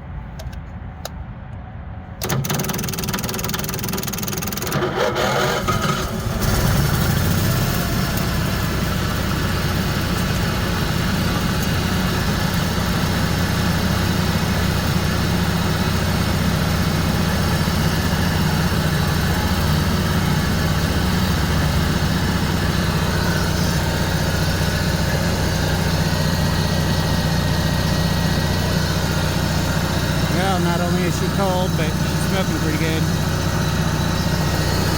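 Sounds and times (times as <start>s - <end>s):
generator starting and running: 0.0s - 34.9s.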